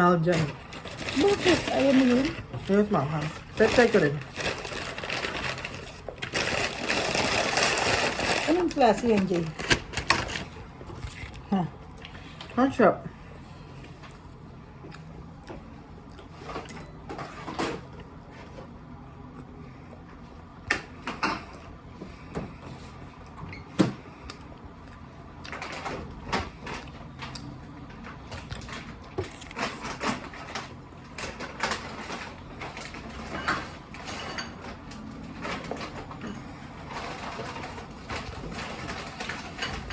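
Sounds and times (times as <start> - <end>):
crunching and chewing food: 0.0 - 23.4, 24.0 - 39.9.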